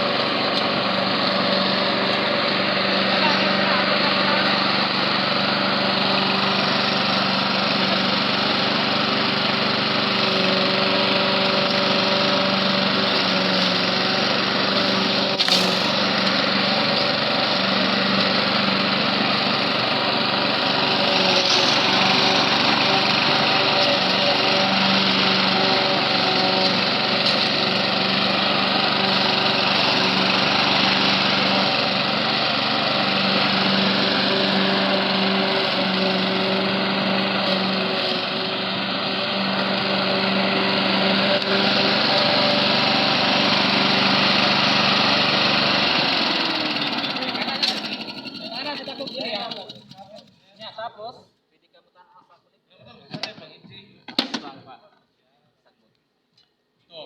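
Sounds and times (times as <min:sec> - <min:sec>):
lawn mower engine running: 0:00.0 - 0:50.8.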